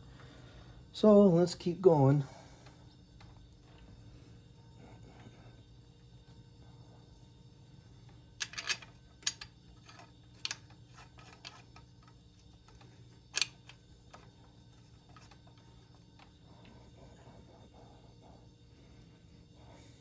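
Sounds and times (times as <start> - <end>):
faint steady hum: 0.0 - 20.0
metal parts and hand tools clicking: 8.4 - 16.3.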